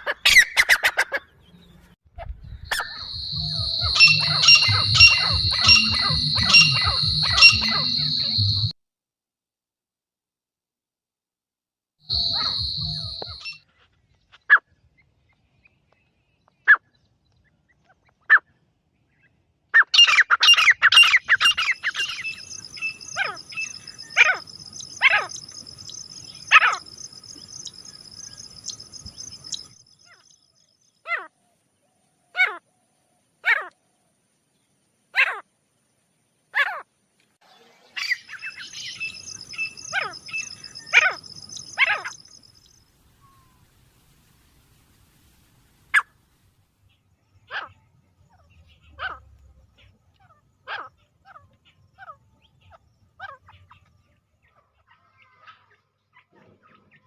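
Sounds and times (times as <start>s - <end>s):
francolin calling: 2.7s - 8.8s, 12.1s - 13.6s, 20.5s - 30.4s, 38.0s - 43.6s
high ringing trill: 2.8s - 8.7s, 12.1s - 13.6s.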